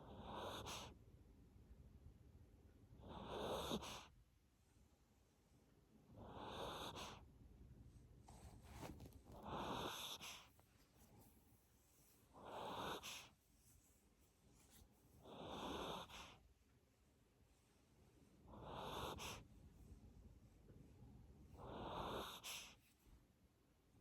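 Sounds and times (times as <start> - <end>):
dog snoring faintly: 0.0 - 1.0, 3.0 - 4.2, 6.1 - 7.3, 8.3 - 11.3, 12.3 - 13.4, 14.6 - 16.4, 18.4 - 19.5, 21.5 - 22.8.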